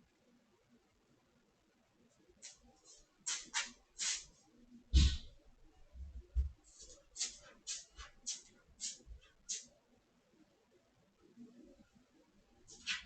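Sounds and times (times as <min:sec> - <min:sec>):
heavy thump: 0:05.0 - 0:05.3
cat scratching: 0:06.8 - 0:09.7, 0:12.7 - 0:13.0.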